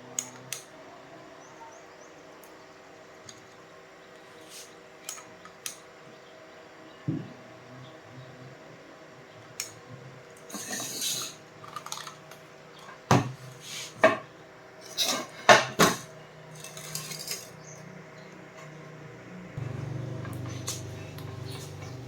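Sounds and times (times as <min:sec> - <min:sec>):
metal tools clinking and scraping: 0:10.5 - 0:12.2, 0:14.8 - 0:17.7.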